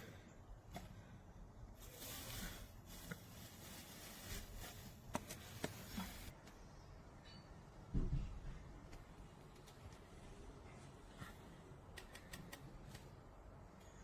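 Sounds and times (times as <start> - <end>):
soft handling rustle: 1.7 - 6.4.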